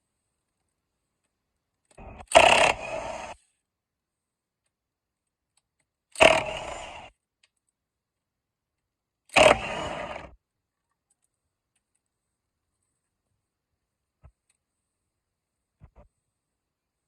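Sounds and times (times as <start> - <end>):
mechanical noise bursts: 6.2 - 7.1, 9.4 - 10.3.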